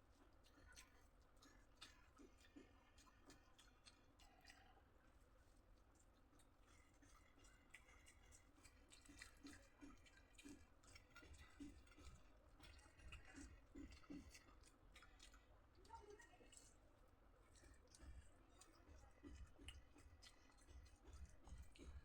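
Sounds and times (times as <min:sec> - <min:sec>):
chewing food crunches: 0:00.4 - 0:04.8, 0:05.5 - 0:16.8.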